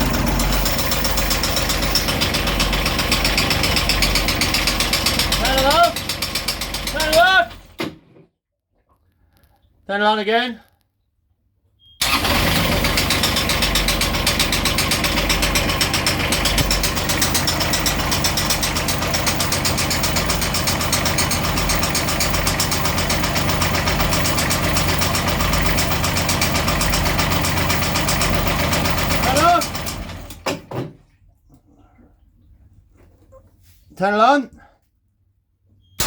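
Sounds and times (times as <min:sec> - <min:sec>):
diesel engine starting and idling: 0:00.0 - 0:07.8, 0:12.0 - 0:30.8
engine knocking: 0:00.0 - 0:07.8, 0:12.0 - 0:30.5.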